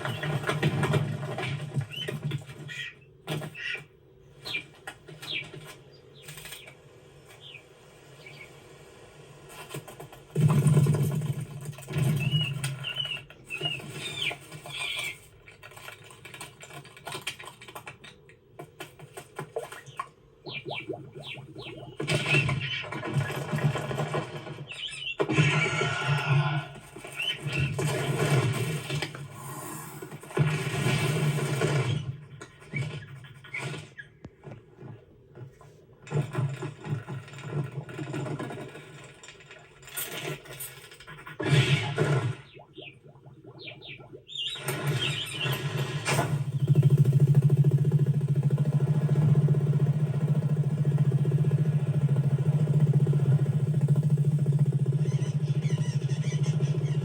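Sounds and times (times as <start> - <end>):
rattling flutter and scramble: 0.0 - 57.0
fluttering wings: 4.5 - 7.6
loud burst: 25.3 - 32.2
bird chirps and squawks: 42.4 - 45.7, 55.0 - 57.0
rapid rattling: 44.7 - 57.0.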